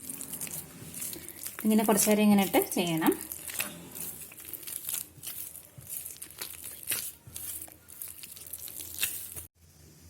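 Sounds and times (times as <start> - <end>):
dough being kneaded by hand: 0.0 - 9.5.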